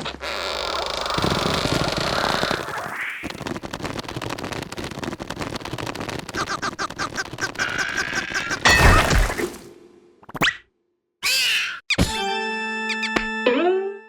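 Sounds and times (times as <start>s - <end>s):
short squeaky cries: 11.2s - 12.0s.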